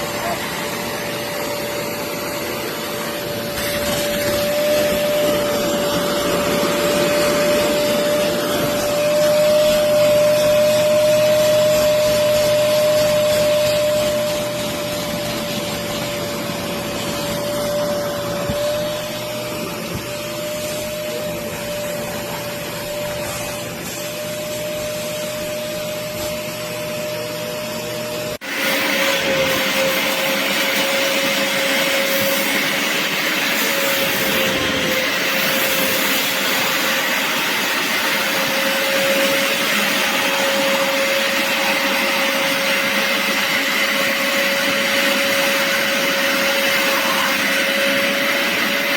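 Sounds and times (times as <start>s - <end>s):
rushing suction noise: 0.0s - 26.6s
carpet cleaner motor whine: 0.0s - 48.9s.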